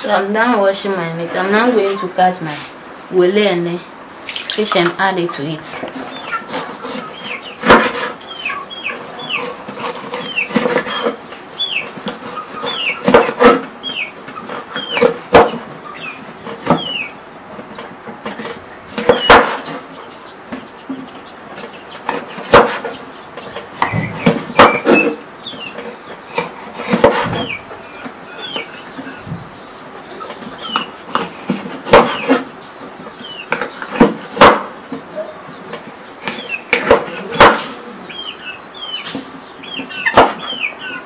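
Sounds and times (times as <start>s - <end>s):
chickens clucking: 0.0s - 41.0s
knife chopping on a board: 22.1s - 22.9s, 26.3s - 27.5s.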